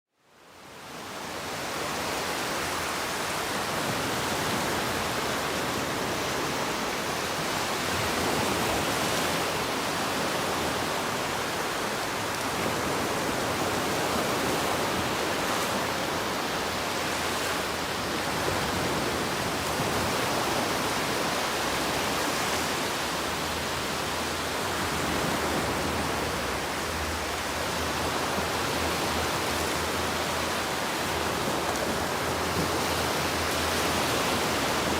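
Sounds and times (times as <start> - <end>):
ocean waves on beach: 0.3 - 34.9.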